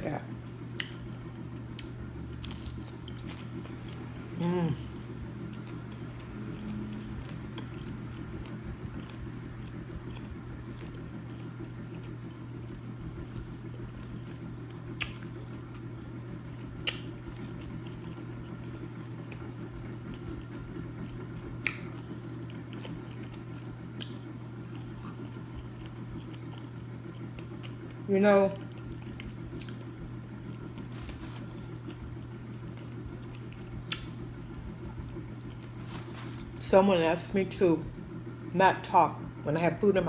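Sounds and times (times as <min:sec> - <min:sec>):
steady low hum: 0:00.0 - 0:40.0
chewing and biting food: 0:00.7 - 0:36.7
lip smacks: 0:15.0 - 0:15.3, 0:16.8 - 0:17.2, 0:21.6 - 0:22.0, 0:33.8 - 0:34.2.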